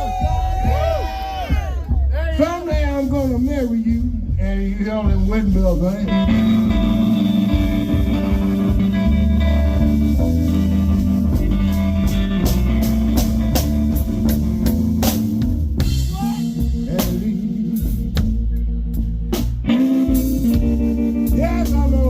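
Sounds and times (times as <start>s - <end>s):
live blues band playing: 0.0s - 22.0s.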